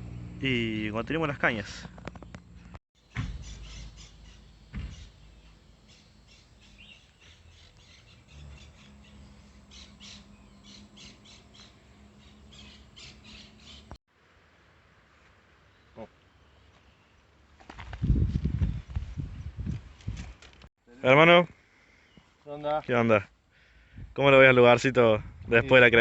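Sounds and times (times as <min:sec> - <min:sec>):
birds chirping and squawking: 0:01.9 - 0:14.0
thump: 0:03.1 - 0:03.8, 0:04.7 - 0:05.2.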